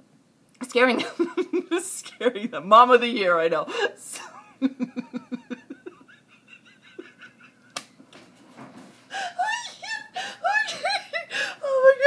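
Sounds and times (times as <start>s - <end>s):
woman laughing: 0.8s - 2.6s, 3.6s - 7.8s, 9.1s - 12.0s.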